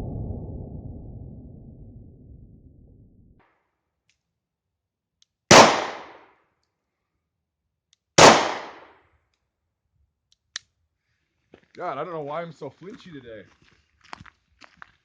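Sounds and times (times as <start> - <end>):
pistol shots echoing: 5.5 - 6.2, 8.2 - 8.8.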